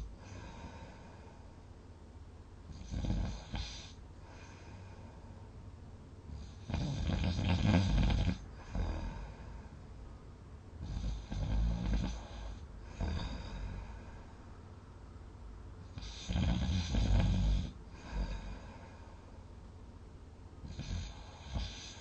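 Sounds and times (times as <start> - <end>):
low background hum: 0.0 - 22.0
person snoring loudly: 2.7 - 3.9, 6.4 - 9.5, 10.8 - 14.0, 15.9 - 18.7.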